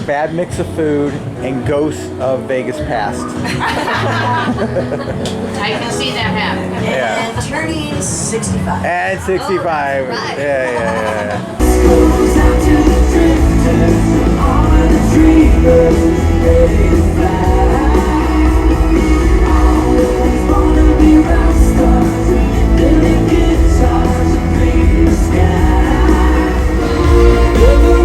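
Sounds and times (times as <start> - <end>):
pop-rock song with singing: 10.2 - 28.0
heavy bass: 11.6 - 28.0.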